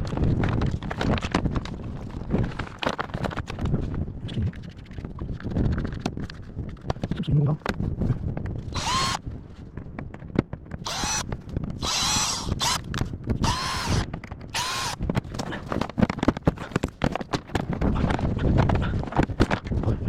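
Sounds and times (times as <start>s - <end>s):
cordless drill whining: 8.7s - 9.2s, 10.8s - 15.0s.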